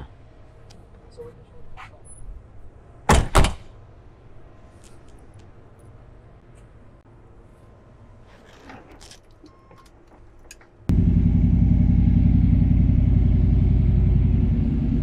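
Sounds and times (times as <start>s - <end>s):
car engine starting and running: 10.9s - 15.0s.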